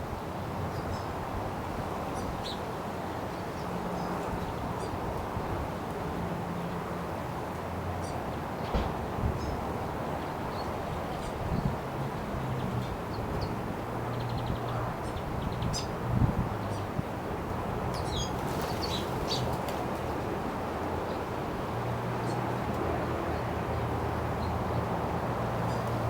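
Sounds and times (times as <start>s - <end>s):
wind noise: 11.3s - 12.3s, 14.4s - 20.7s
birds chirping: 18.0s - 20.2s.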